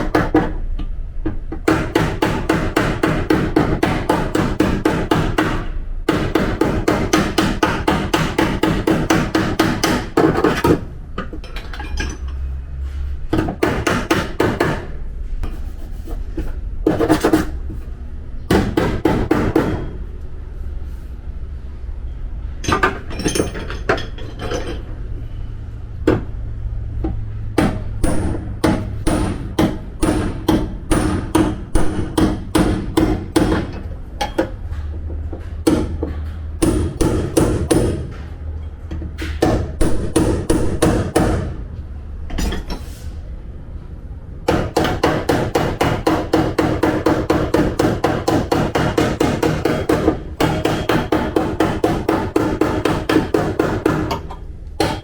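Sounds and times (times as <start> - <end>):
hammer striking steel panel: 1.6 - 10.9, 27.5 - 34.8, 35.5 - 38.3, 39.2 - 41.6, 44.5 - 55.0.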